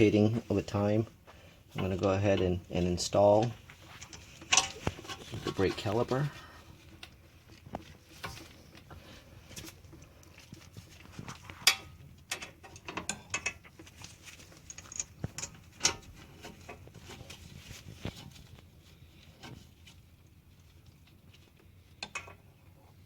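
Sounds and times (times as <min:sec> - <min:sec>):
metal clicks and knocks: 0:03.3 - 0:06.0, 0:11.3 - 0:14.0, 0:14.6 - 0:17.2, 0:22.0 - 0:22.4.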